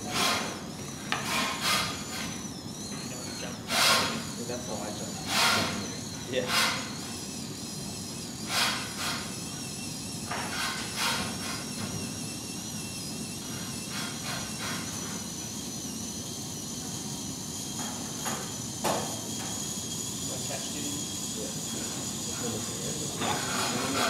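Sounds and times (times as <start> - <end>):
faint high whine: 9.1 - 24.0.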